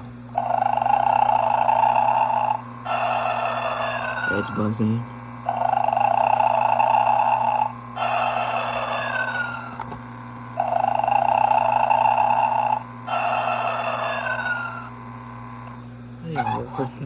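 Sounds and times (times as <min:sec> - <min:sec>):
steady low buzz: 0:00.0 - 0:16.3
recorded snore through small speaker: 0:05.5 - 0:09.4.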